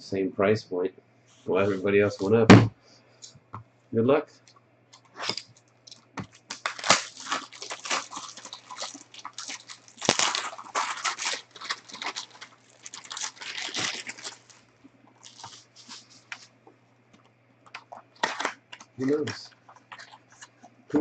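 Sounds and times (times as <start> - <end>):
card packaging tearing and crinkling: 5.1 - 16.5, 17.8 - 20.5.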